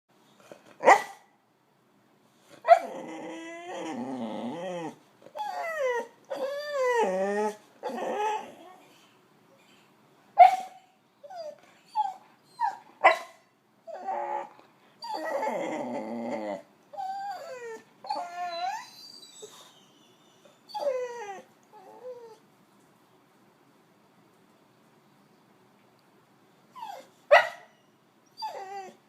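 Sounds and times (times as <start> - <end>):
dog whining and yelping: 2.6 - 8.8, 10.4 - 22.5, 26.7 - 29.0
dog howly whines: 2.7 - 8.6, 13.9 - 19.8, 20.7 - 22.4, 28.3 - 29.0
dog groaning moan: 2.8 - 8.8, 13.9 - 19.4.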